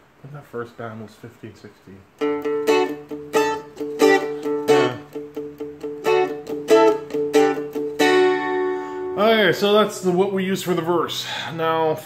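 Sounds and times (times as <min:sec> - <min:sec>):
strumstick picked riff: 0:02.1 - 0:10.1.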